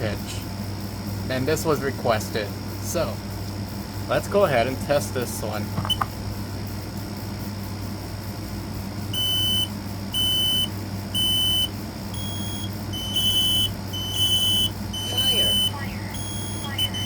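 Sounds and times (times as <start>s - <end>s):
low steady hum: 8.2s - 17.0s
smoke alarm beeping: 9.1s - 17.0s
second smoke alarm beeping: 9.2s - 17.0s.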